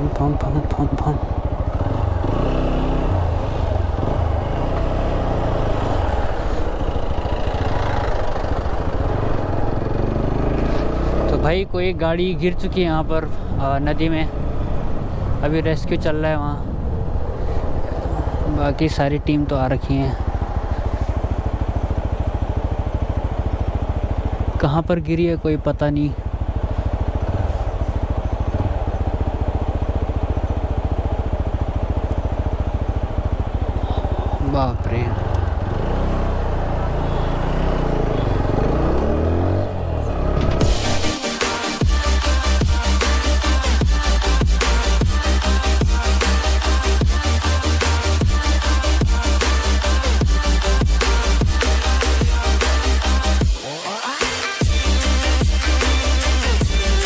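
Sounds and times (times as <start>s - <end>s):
motorcycle engine running: 0.0s - 57.0s
road noise: 0.0s - 57.0s.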